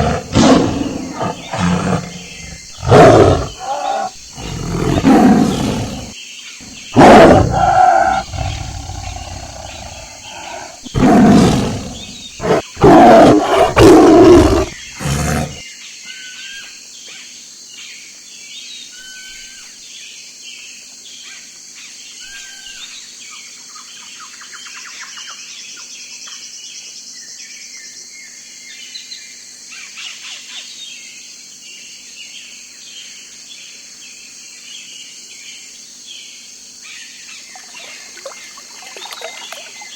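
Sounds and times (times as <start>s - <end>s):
big cat roaring: 0.0s - 15.6s
birds chirping: 0.0s - 15.6s
high insect buzz: 0.0s - 15.6s.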